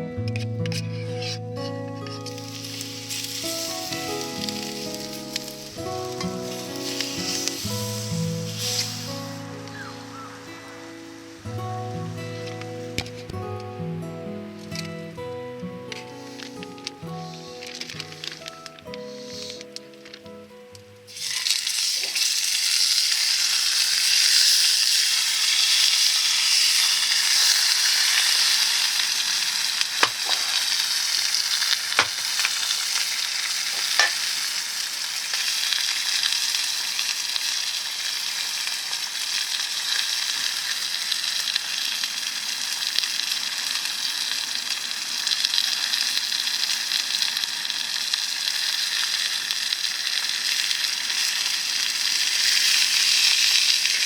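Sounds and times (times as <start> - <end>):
food sizzling in a skillet: 0.7 - 13.3, 15.9 - 19.8, 21.1 - 54.0.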